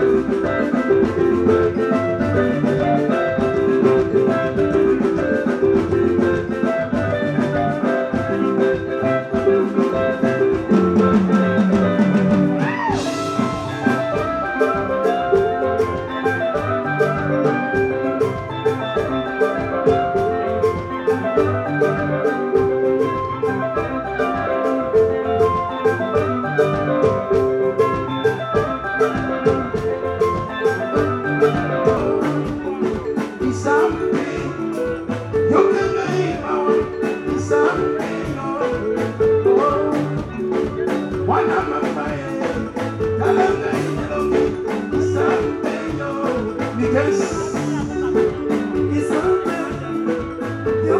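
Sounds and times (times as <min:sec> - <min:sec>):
person singing: 0:00.0 - 0:23.0, 0:30.4 - 0:50.9
live band music: 0:00.0 - 0:50.9.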